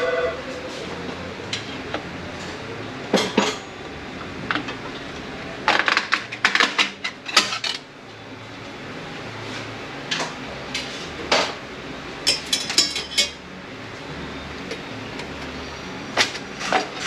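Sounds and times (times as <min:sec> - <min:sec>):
metal parts clinking and clattering: 0:05.7 - 0:07.8, 0:12.3 - 0:13.4.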